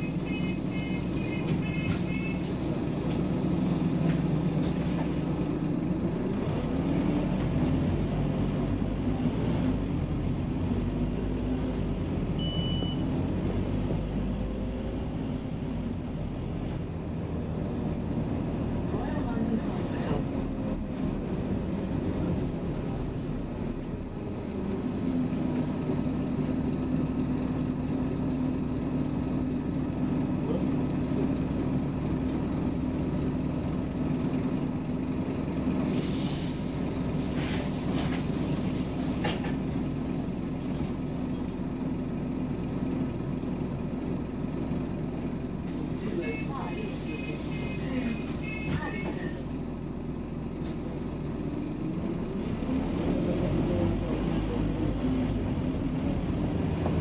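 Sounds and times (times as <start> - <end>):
bus diesel engine droning: 0.0 - 57.0
air brake hiss: 35.8 - 40.9.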